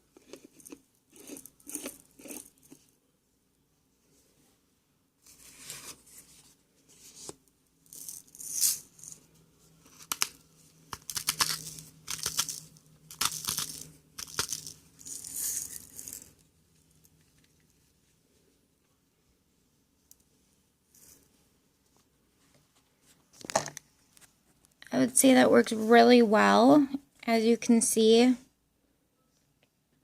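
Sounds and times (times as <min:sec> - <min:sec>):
salt grinder crunching: 0:00.1 - 0:02.8, 0:09.9 - 0:16.4.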